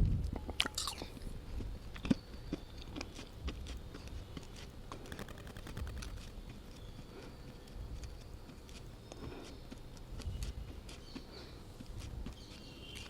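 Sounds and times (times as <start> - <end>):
person crunching and chewing: 0.4 - 7.3.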